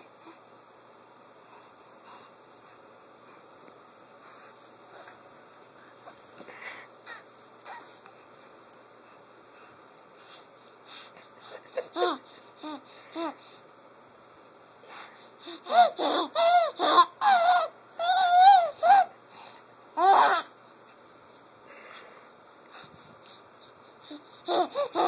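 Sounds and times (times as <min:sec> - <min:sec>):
baby laughing: 0:11.6 - 0:12.3, 0:15.7 - 0:19.1, 0:24.5 - 0:25.0.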